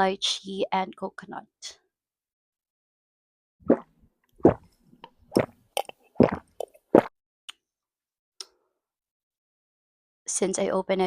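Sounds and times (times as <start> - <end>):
person gulping a drink: 3.7 - 7.1
faint mouth clicks: 5.8 - 6.0.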